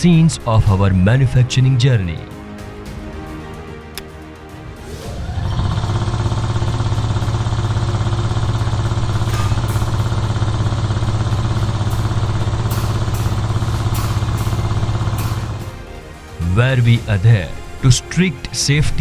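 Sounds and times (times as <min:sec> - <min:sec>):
engine running with fast throb: 0:05.0 - 0:17.7.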